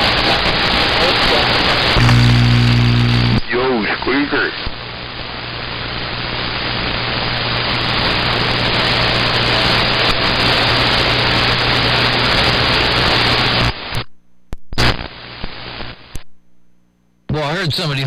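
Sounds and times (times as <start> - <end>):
radio static hiss: 0.0 - 14.1, 14.7 - 16.3, 17.2 - 18.0
low hum: 2.0 - 3.4.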